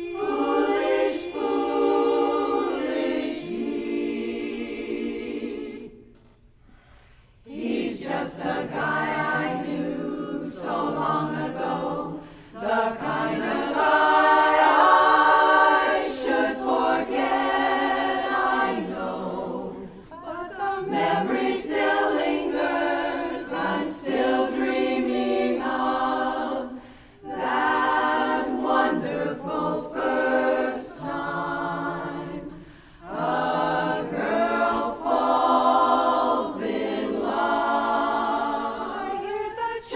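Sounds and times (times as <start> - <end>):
women's chorus singing a cappella: 0.0 - 39.9
singers breathing: 6.6 - 7.5, 12.2 - 12.6, 26.7 - 27.2, 32.5 - 33.1.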